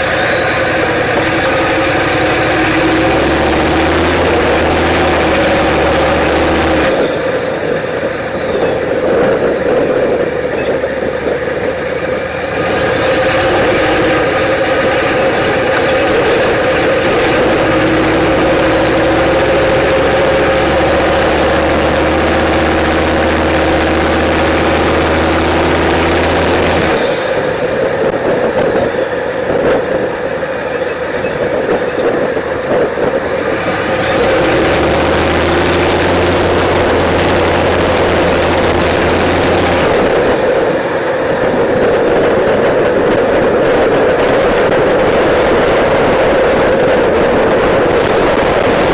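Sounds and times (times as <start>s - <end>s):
turbo whistle: 0.0s - 8.8s
diesel truck engine driving: 0.0s - 48.9s.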